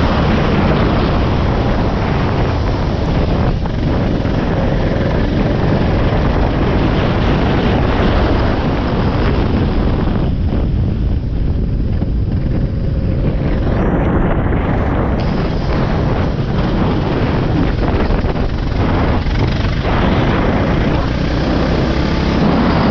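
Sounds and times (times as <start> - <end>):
racing kart engine: 0.0 - 22.9
wind buffeting microphone: 0.0 - 22.9.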